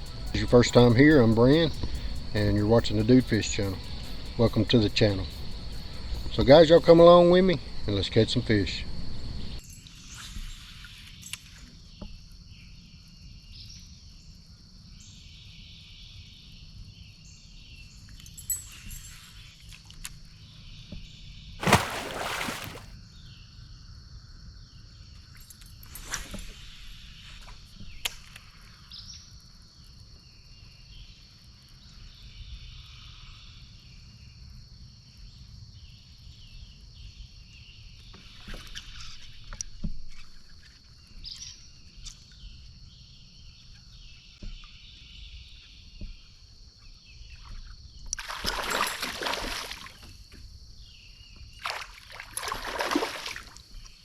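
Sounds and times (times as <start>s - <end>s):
insects buzzing and chirping: 0.0s - 54.0s
kayak paddle splashing in water: 21.6s - 22.9s, 48.2s - 50.2s, 51.6s - 53.6s.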